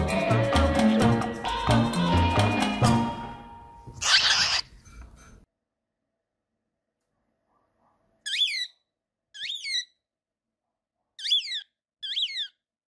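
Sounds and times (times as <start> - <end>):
cockatiel whistling: 9.4 - 9.9, 11.2 - 12.6.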